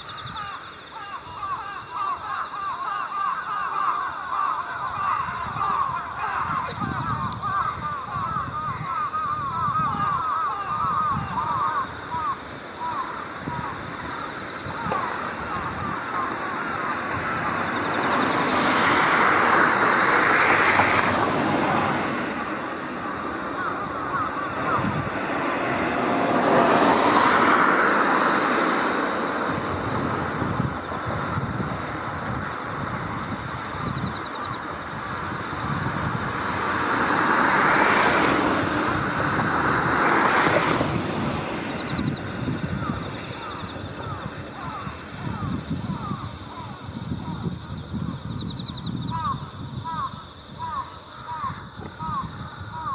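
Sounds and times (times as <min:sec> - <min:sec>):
vehicle passing by: 0:14.9 - 0:46.0.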